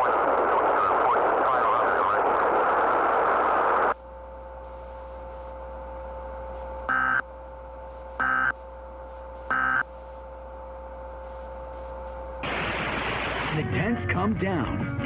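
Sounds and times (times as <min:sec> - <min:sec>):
data tone bursts: 0:06.9 - 0:07.2, 0:08.2 - 0:08.6, 0:09.5 - 0:09.8.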